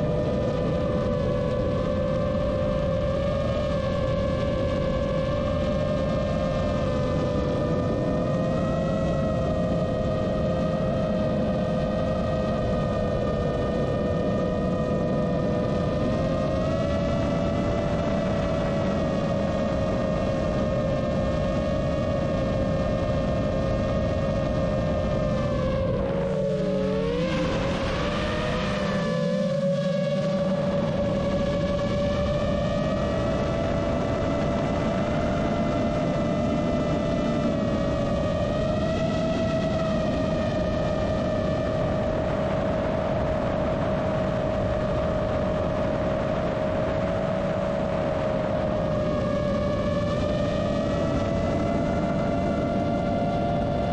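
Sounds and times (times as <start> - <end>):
quadcopter propellers whining: 23.6 - 43.3.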